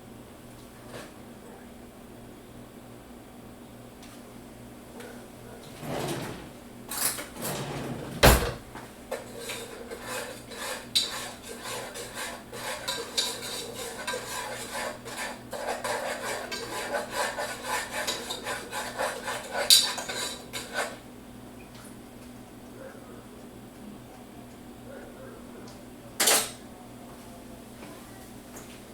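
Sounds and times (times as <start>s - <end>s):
utensil stirring batter in bowl: 9.1s - 21.1s.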